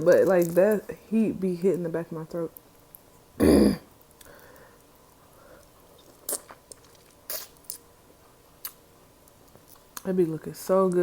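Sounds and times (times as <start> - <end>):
person chewing: 5.6 - 7.9, 8.6 - 10.0
wet mouth clicks: 6.0 - 7.8.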